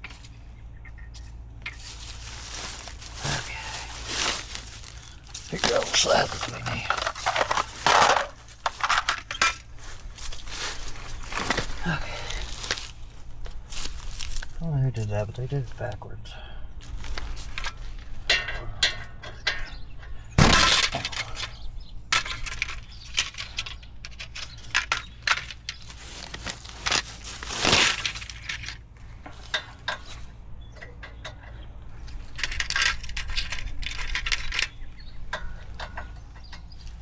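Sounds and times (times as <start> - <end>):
metal tools clinking: 1.1 - 12.9, 20.4 - 36.8
metal clank: 1.7 - 9.8, 20.4 - 21.6.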